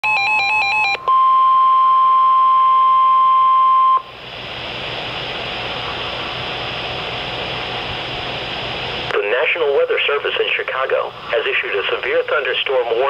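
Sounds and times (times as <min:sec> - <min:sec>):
steady single-tone alarm: 0:00.0 - 0:04.1
radio hiss: 0:08.5 - 0:13.0.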